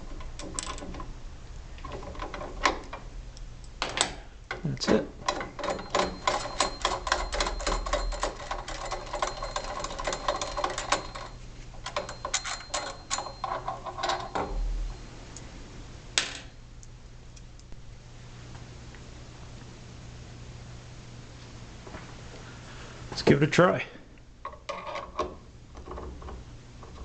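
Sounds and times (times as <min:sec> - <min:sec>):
metallic clicking and rattling: 0:00.0 - 0:01.1, 0:01.8 - 0:14.7
steady low hum: 0:00.0 - 0:27.0.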